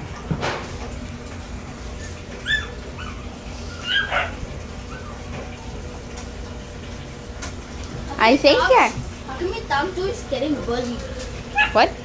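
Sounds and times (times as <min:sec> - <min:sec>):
small dog whimpering yips: 0:01.9 - 0:05.2, 0:11.5 - 0:11.8.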